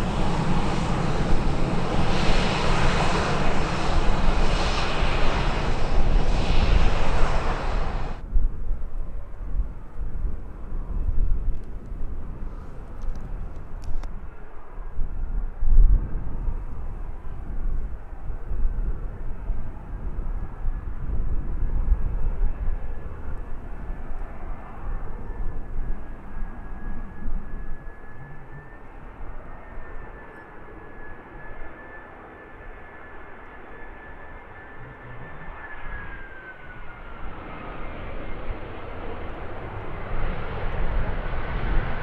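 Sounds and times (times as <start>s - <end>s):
jet engines whining: 0.0s - 8.2s, 22.4s - 42.0s.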